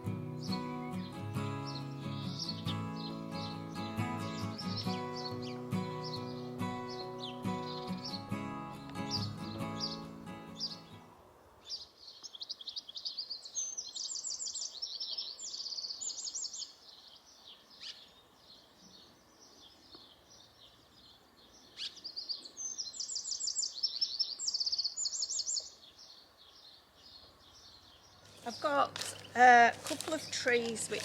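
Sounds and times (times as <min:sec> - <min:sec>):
songbird warbling: 0:21.5 - 0:26.3.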